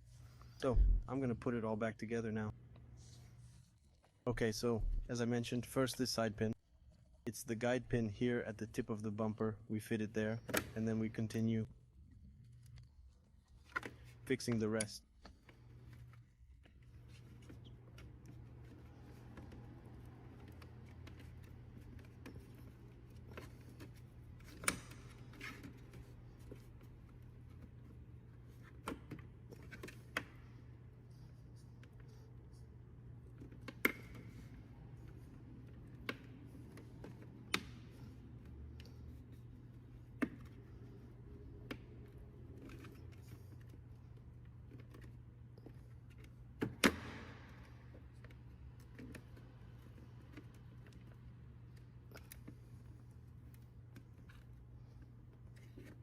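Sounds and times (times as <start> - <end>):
steady low hum: 0.0 - 6.6.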